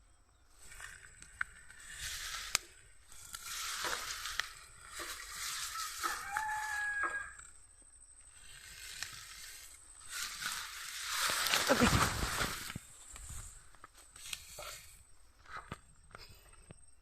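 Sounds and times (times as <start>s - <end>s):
rustling hiss: 0.5s - 16.6s
rooster crowing: 5.1s - 7.7s.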